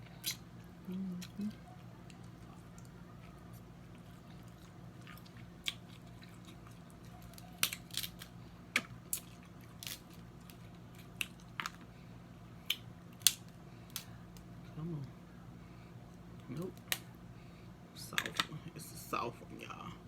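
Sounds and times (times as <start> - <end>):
crab shells cracking by hand: 4.5 - 11.9, 12.6 - 14.5.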